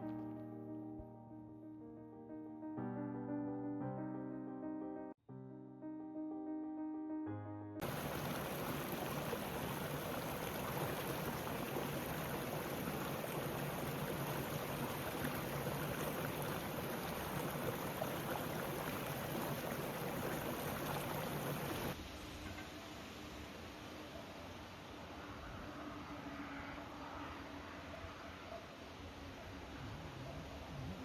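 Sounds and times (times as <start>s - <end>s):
river water rushing: 7.8s - 22.0s.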